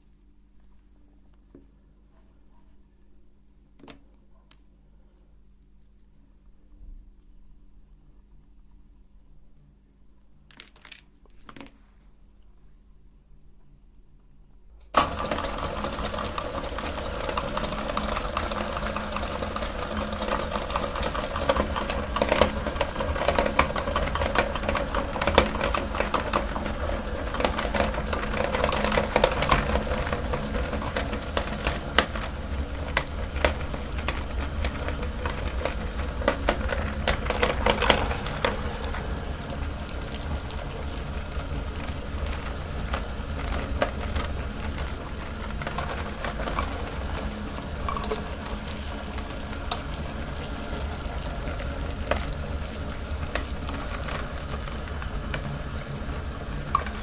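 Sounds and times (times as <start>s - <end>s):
small crackles and clicks: 0.5s - 6.6s, 7.2s - 57.0s
meat grinder motor hum: 15.0s - 57.0s.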